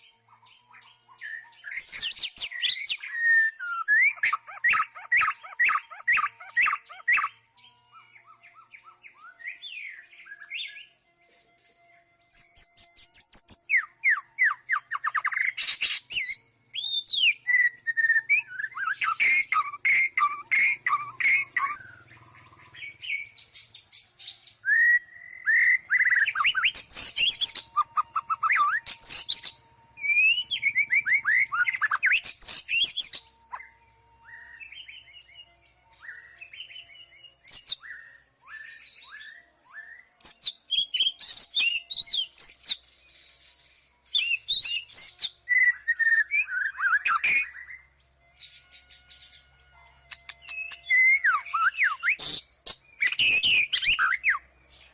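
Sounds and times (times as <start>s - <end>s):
bird singing varied song: 0.0s - 54.9s.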